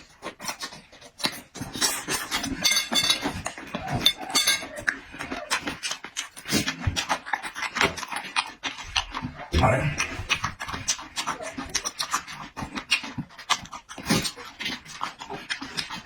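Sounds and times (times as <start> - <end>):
wet chewing and smacking: 0.0 - 16.0
utensils clinking on dishes: 2.0 - 5.7.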